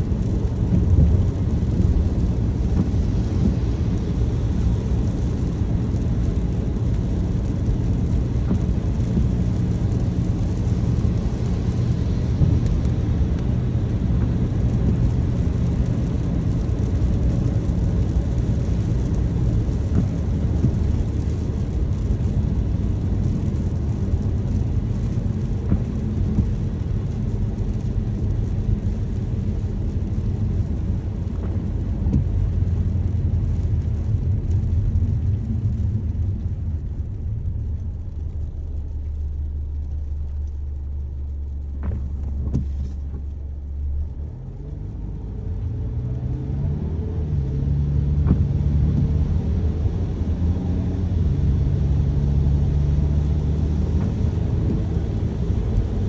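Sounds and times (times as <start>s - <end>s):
car road and engine rumble: 0.0s - 56.0s.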